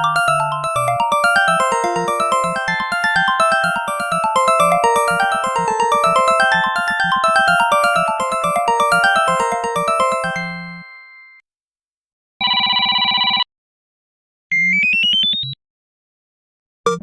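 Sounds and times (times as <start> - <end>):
short notes climbing in pitch: 0.0 - 10.6
chiming ringtone melody: 0.0 - 11.4.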